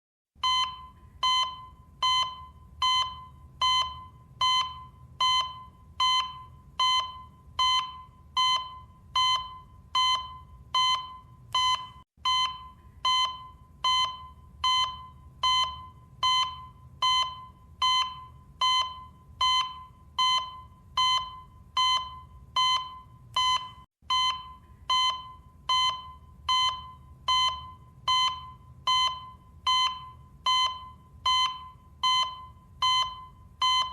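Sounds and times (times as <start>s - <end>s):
cardiac monitor beeping: 0.4s - 33.9s.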